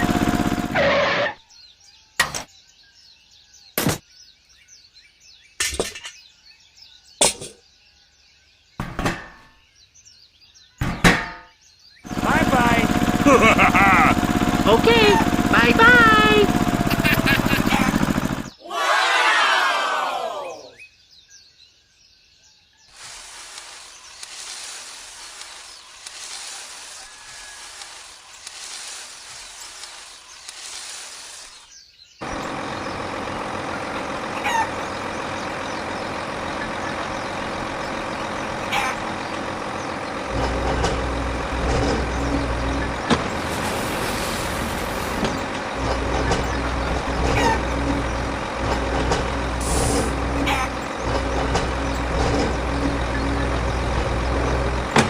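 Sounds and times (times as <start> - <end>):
engine-like running hum: 0.0 - 1.4, 12.0 - 18.6, 32.2 - 55.0
rough fluctuating hiss: 23.0 - 31.7
heavy low rumble: 32.2 - 55.0.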